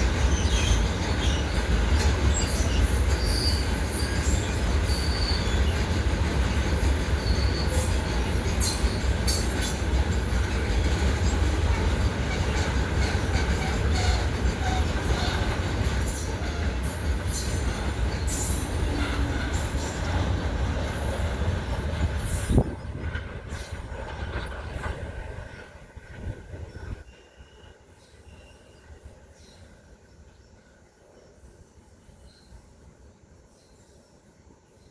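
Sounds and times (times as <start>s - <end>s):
train wagons rumbling: 0.0s - 27.7s.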